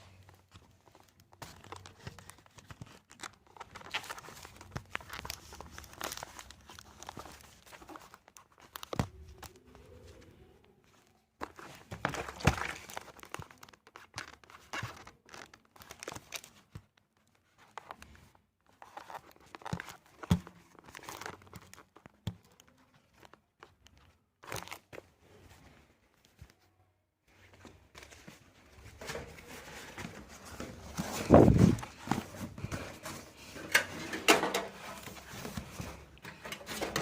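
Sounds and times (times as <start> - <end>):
packing materials crinkling: 0.0 - 26.6, 27.4 - 37.0.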